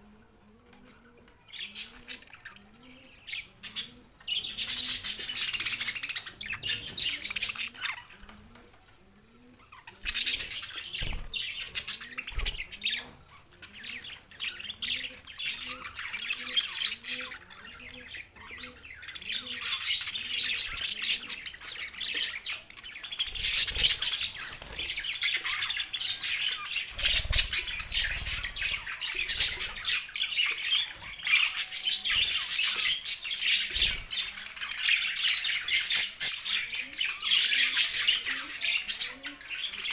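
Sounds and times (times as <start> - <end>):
budgerigars chattering: 9.7 - 39.9.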